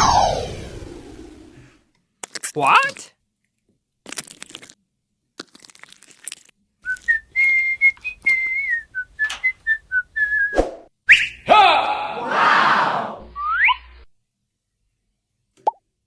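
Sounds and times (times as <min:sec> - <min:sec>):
person whistling a tune: 0:06.9 - 0:11.4
light clattering: 0:09.2 - 0:09.8.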